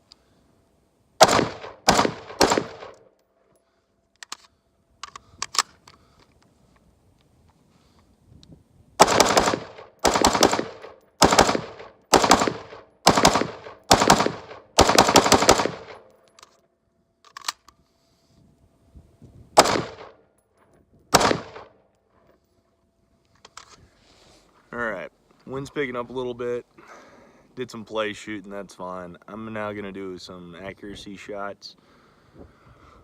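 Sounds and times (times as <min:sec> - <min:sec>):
sharp loud gunshots: 0:01.2 - 0:03.0, 0:09.0 - 0:16.0, 0:19.6 - 0:20.2, 0:21.1 - 0:21.7.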